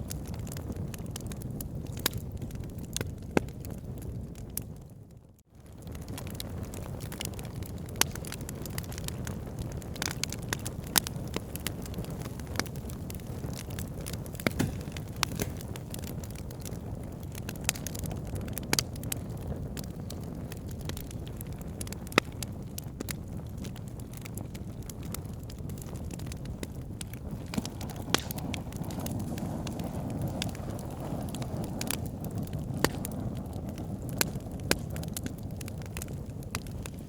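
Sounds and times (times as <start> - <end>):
sharp pops and snaps of fire: 0.0 - 37.0
wood fire crackling: 0.0 - 37.0.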